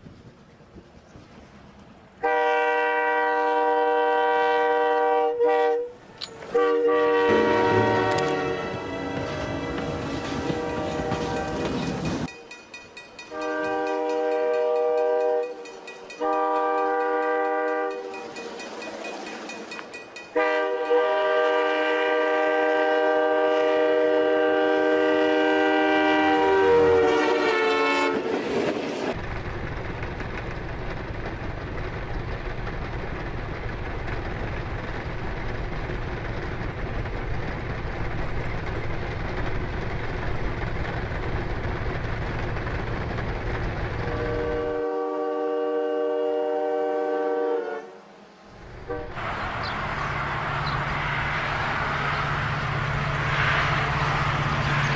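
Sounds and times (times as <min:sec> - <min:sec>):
train rumbling on rails: 0:00.0 - 0:54.9
train horn blasts: 0:02.2 - 0:12.5, 0:13.3 - 0:18.4, 0:20.3 - 0:28.5, 0:44.0 - 0:48.2, 0:48.8 - 0:54.9.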